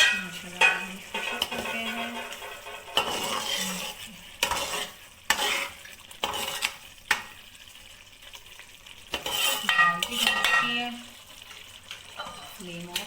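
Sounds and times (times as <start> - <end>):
spoon knocking against pot: 0.0 - 3.1, 9.7 - 10.8
stirring and sizzling: 0.0 - 13.0.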